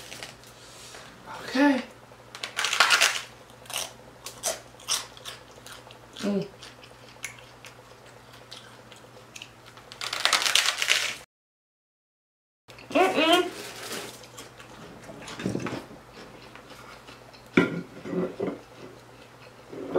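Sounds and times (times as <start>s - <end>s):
crunching bites of crispy food: 2.4s - 11.2s.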